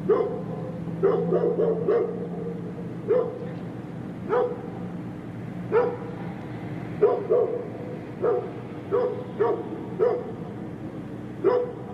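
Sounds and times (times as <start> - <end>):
large dog barking: 0.0 - 3.5, 4.3 - 4.8, 5.7 - 6.2, 7.0 - 10.5, 11.4 - 11.9.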